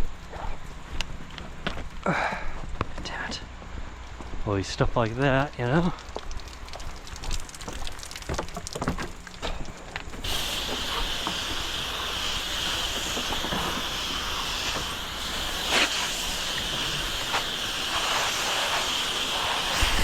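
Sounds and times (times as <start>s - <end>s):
pressure washer spraying: 10.2s - 20.0s.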